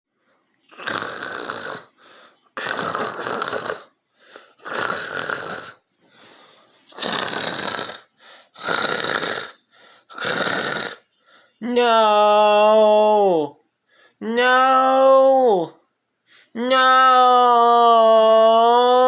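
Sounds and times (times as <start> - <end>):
loud rasping snoring: 0.7 - 2.0, 2.6 - 3.9, 4.6 - 5.8, 6.9 - 11.0.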